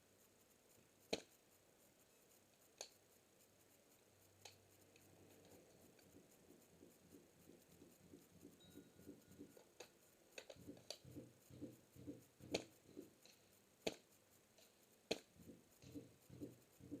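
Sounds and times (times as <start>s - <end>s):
soft clicks: 0.7s - 17.0s
low regular thumps: 5.5s - 9.8s, 10.5s - 13.2s, 15.1s - 17.0s.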